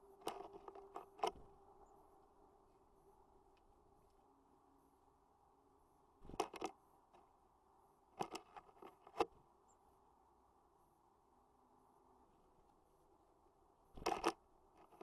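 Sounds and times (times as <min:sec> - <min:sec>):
birds pecking at feeder: 0:00.0 - 0:02.2, 0:06.2 - 0:07.3, 0:13.9 - 0:15.0.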